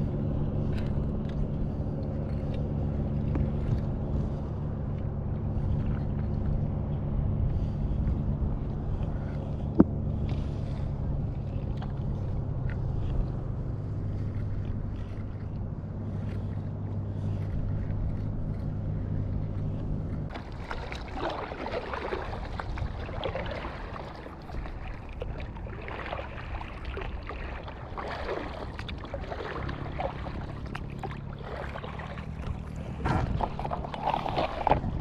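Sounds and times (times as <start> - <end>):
steady low hum: 0.0 - 35.0
paddle strokes splashing water: 7.5 - 35.0.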